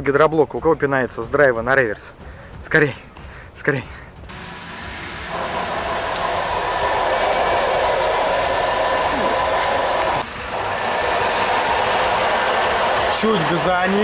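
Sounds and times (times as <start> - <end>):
transmission whirring: 4.3 - 14.0.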